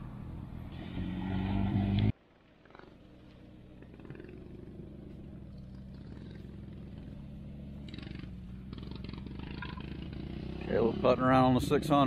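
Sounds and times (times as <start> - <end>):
atv engine running: 2.7 - 12.0.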